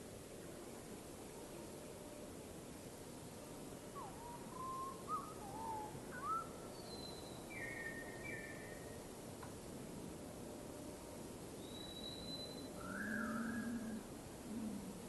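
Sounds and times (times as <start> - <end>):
background hiss: 0.0 - 15.0
bird whistling calls: 4.0 - 8.9, 11.6 - 14.0.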